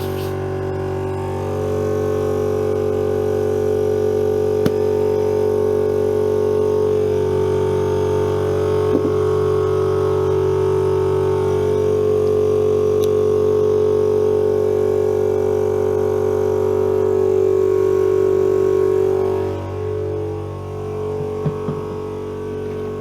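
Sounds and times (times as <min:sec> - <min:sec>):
air compressor running: 0:00.0 - 0:23.0
small knock: 0:21.2 - 0:21.9.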